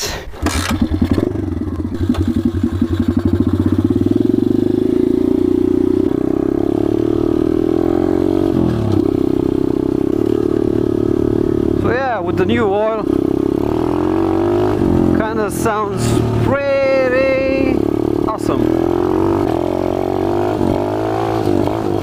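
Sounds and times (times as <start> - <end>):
pit bike engine starting: 0.1 - 4.4.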